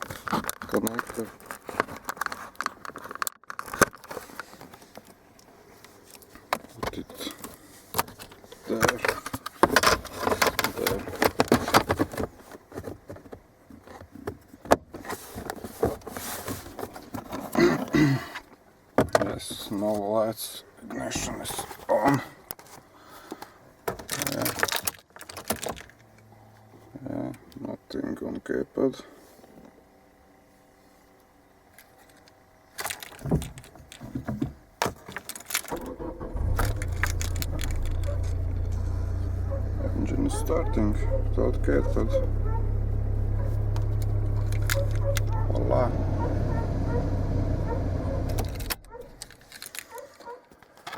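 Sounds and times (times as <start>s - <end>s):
car keys jangling and clicking: 35.1s - 50.9s
car engine starting and idling: 35.6s - 49.4s
small hard objects rattling: 36.8s - 38.2s.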